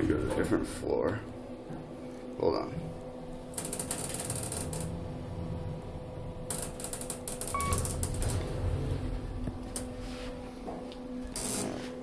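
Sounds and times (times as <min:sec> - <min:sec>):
short electronic beep: 0:07.5 - 0:08.0.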